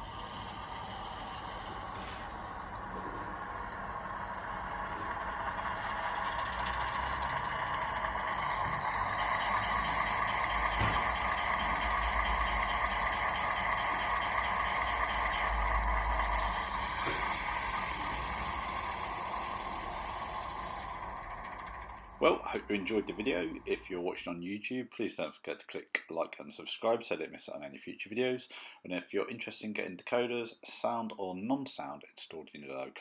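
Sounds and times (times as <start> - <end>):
diesel engine sound through small speaker: 0.0 - 24.0
hiss: 15.5 - 21.2.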